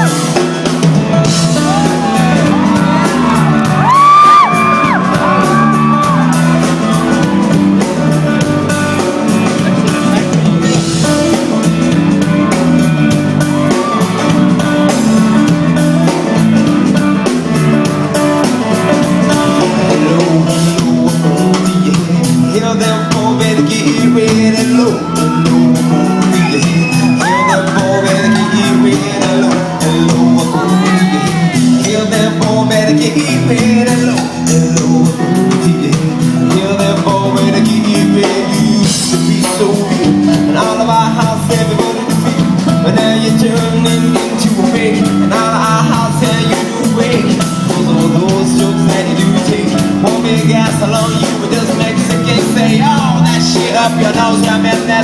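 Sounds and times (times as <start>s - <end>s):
live band playing: 0.0s - 55.0s
voices whooping and shouting: 1.7s - 7.3s, 26.4s - 28.8s, 30.5s - 31.6s.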